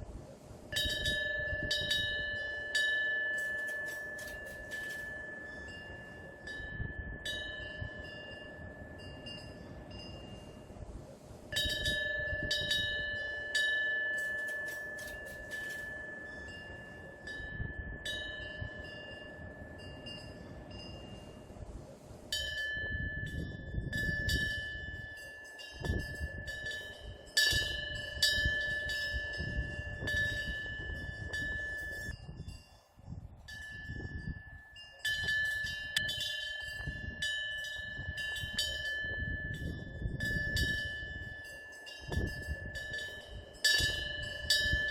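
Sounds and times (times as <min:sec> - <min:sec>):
small wind bell ringing: 0:00.7 - 0:44.9.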